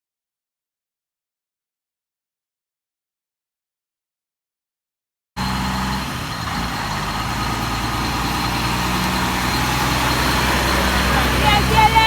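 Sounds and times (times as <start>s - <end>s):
road noise: 5.4s - 12.0s
vehicle engine idling: 5.4s - 12.0s.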